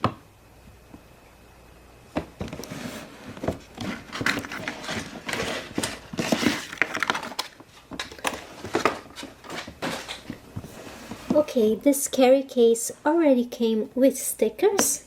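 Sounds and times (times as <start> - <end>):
plastic packaging crinkling: 3.6 - 10.3.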